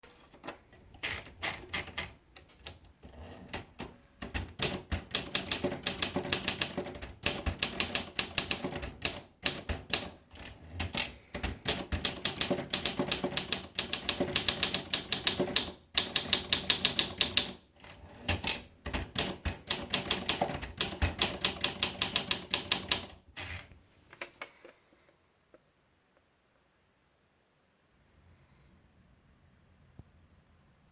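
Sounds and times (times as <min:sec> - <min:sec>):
manual typewriter typing: 0:00.7 - 0:23.7.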